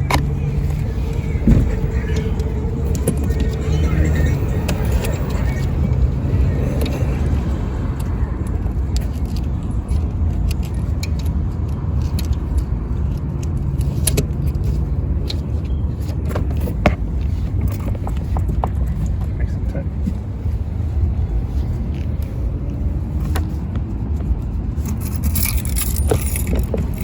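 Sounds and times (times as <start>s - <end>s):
low motor hum: 0.0s - 27.0s
light clicks and metallic rattles: 23.2s - 27.0s.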